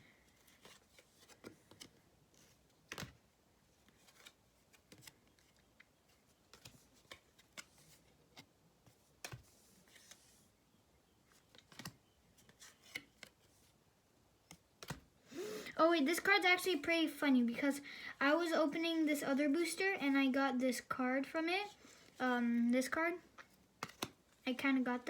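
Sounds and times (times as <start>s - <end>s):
cards being handled and flipped: 0.2s - 10.5s, 11.3s - 13.8s, 14.4s - 15.1s, 23.4s - 25.0s.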